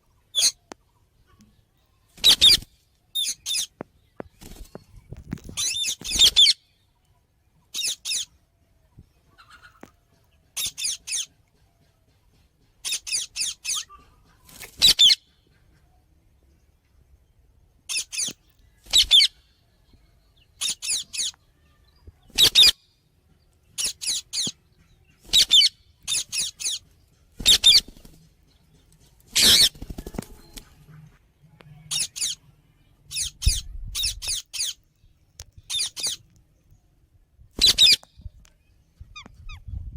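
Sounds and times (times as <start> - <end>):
parrot chirping: 18.9 - 19.4, 25.3 - 26.8.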